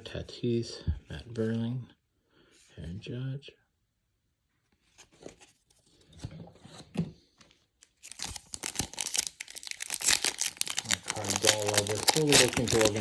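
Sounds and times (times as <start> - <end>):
card pack wrapper tearing: 7.8 - 13.0
cards clicking and rustling: 7.8 - 13.0.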